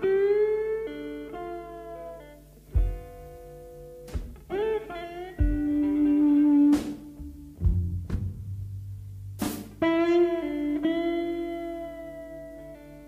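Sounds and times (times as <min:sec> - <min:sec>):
bent electric guitar notes: 0:00.0 - 0:13.0
deep drum thumps: 0:02.8 - 0:03.4, 0:04.1 - 0:04.6, 0:05.4 - 0:09.9.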